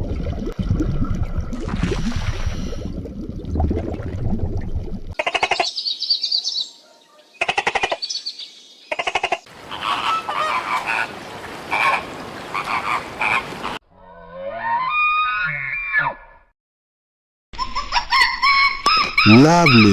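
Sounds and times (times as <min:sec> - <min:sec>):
animal calls in rattling bursts: 0:07.4 - 0:08.0, 0:08.9 - 0:11.1.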